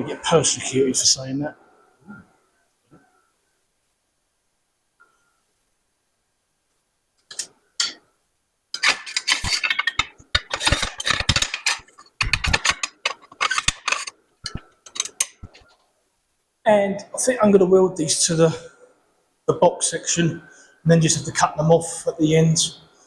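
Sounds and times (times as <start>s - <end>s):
metal parts clinking and rattling: 8.8s - 15.6s.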